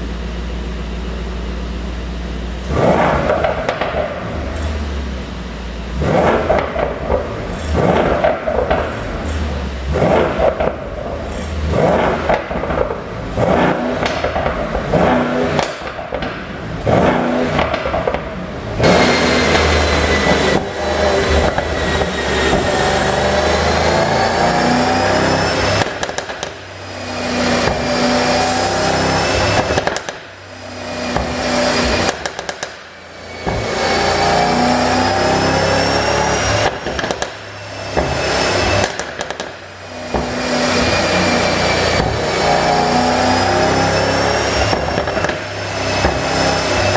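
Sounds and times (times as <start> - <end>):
car engine revving: 0.0 - 46.9
exhaust pops and crackles: 2.7 - 4.8, 6.0 - 22.8, 25.7 - 26.8, 29.4 - 30.5, 31.1 - 33.8, 36.5 - 40.4, 44.6 - 46.9.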